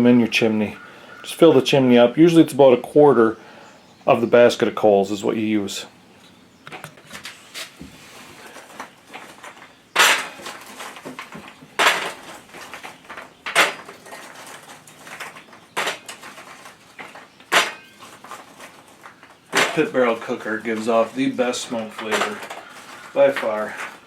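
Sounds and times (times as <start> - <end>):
coals rustling and scraping: 5.7 - 24.0
charcoal clattering into metal: 8.4 - 24.0.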